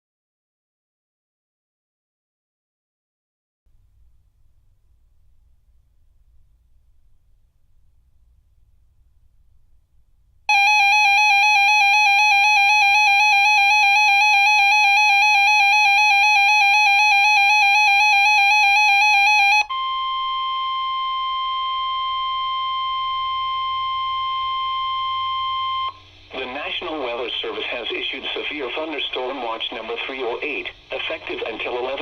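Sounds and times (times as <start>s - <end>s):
warbling electronic alarm tone: 10.5s - 26.0s
steady warning tone: 10.5s - 27.5s.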